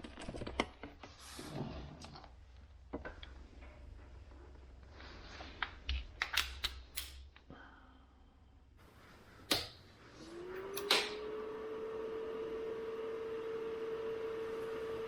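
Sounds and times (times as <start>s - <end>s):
switch click: 9.5s - 9.8s, 10.8s - 11.2s.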